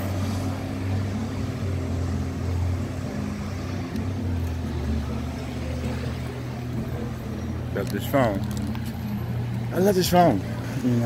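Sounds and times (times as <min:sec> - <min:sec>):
vehicle engine drone: 0:00.0 - 0:11.0.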